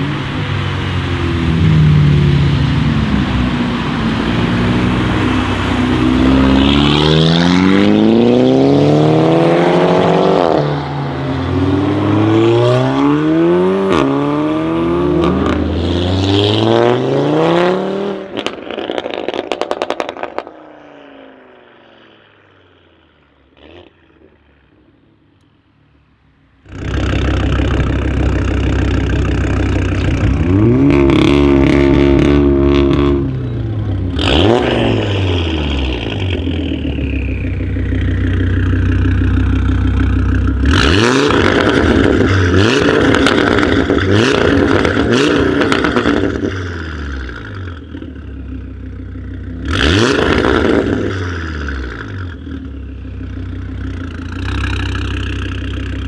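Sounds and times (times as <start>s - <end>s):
car engine revving: 0.0s - 20.5s, 26.6s - 56.0s
exhaust crackles and pops: 18.3s - 20.8s, 26.7s - 51.4s.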